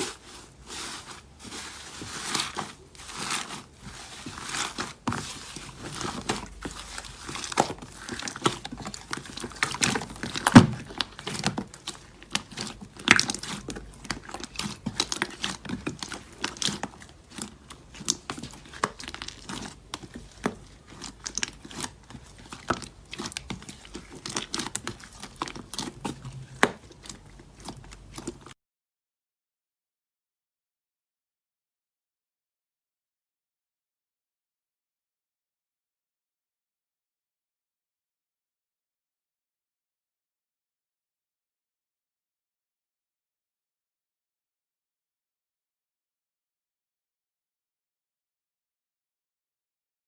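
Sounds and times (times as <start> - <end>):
slime crackling and popping: 1.6 - 28.4.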